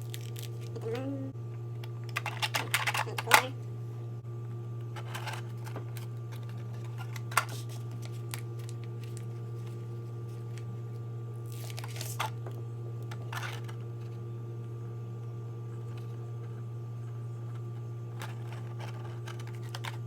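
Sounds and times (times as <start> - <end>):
plastic packaging rustling: 0.0 - 0.8, 5.0 - 10.7, 11.4 - 12.4
steady low hum: 0.0 - 20.0.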